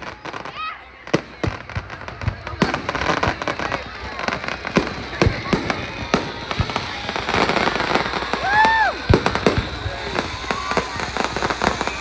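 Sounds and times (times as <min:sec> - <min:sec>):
fireworks bangs and crackling: 0:00.0 - 0:12.0
rising and falling whoop: 0:05.6 - 0:12.0.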